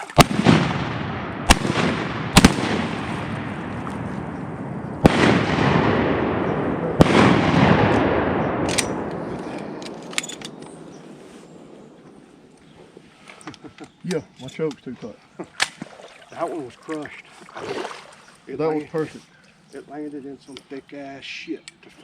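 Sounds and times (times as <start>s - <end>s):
shotgun blasts with rolling echo: 0.0s - 12.4s.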